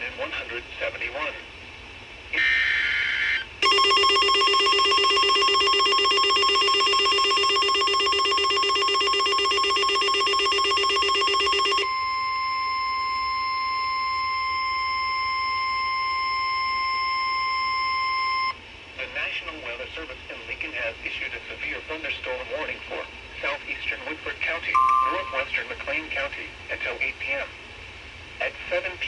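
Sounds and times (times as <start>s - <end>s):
rapidly pulsing electronic alert tone: 3.6s - 11.9s
steady alert tone: 24.8s - 25.5s.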